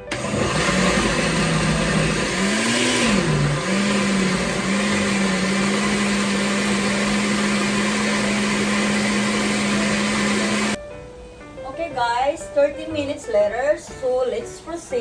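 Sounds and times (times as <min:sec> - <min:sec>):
blender running: 0:00.0 - 0:10.8.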